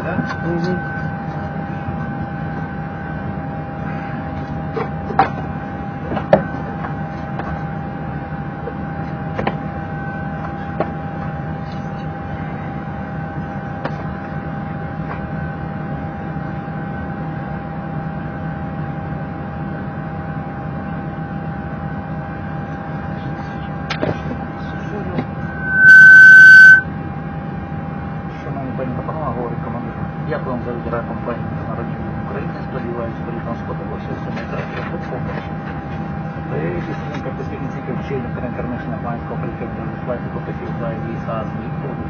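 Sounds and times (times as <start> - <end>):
cockpit hum: 22.7 - 26.8.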